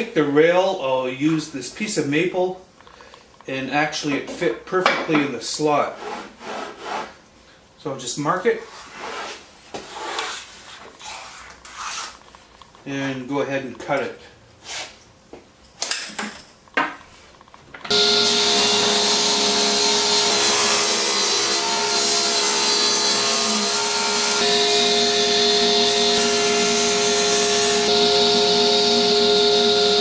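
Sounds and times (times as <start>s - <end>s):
power saw cutting wood: 17.9s - 30.0s.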